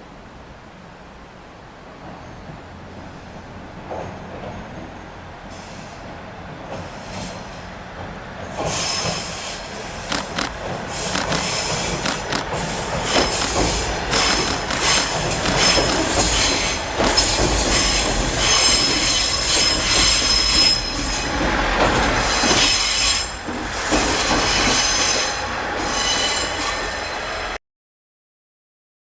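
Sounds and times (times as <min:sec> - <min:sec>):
diesel railcar passing: 0:00.0 - 0:27.6
steel wheels squealing on rails: 0:01.9 - 0:07.8, 0:08.4 - 0:27.6
wheels clacking over rail joints: 0:05.8 - 0:27.0.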